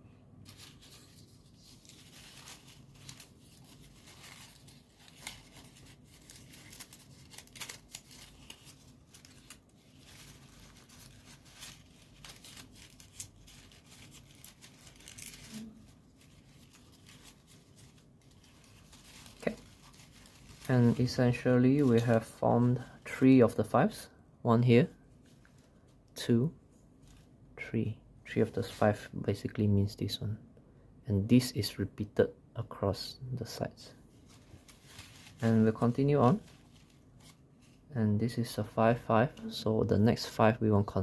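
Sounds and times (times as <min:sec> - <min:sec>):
paper rustling and crinkling: 0:00.4 - 0:23.6, 0:24.8 - 0:26.0, 0:33.9 - 0:38.5.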